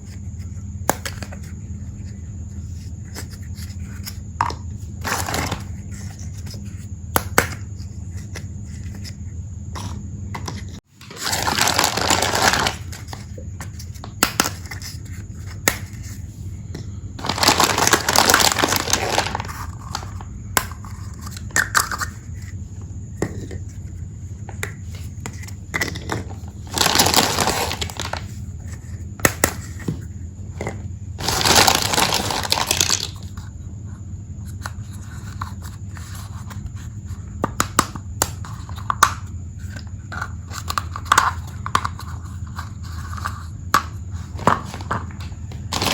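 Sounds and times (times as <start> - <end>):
steady low hum: 0.0 - 45.9
plastic packaging crinkling: 11.0 - 13.4, 17.2 - 20.2, 26.6 - 28.4, 31.2 - 33.3, 44.4 - 45.9.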